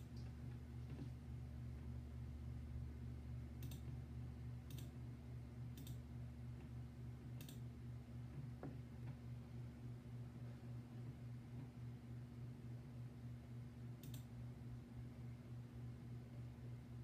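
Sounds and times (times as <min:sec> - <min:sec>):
low electrical hum: 0:00.0 - 0:17.0
sharp short clicks: 0:03.6 - 0:03.9, 0:04.7 - 0:04.9, 0:05.8 - 0:06.0, 0:07.4 - 0:07.6, 0:14.0 - 0:14.3.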